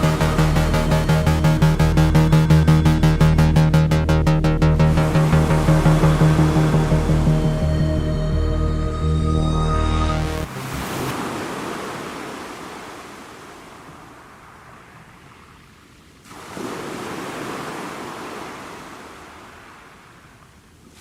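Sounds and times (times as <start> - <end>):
sea waves breaking on shore: 10.5 - 21.0.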